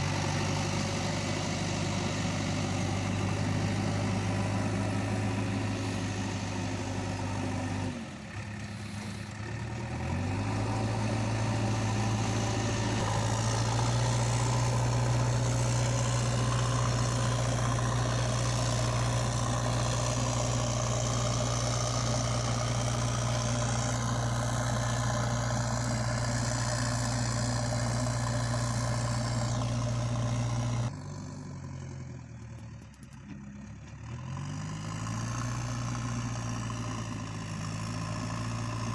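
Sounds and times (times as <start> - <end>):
engine humming: 0.0 - 38.9.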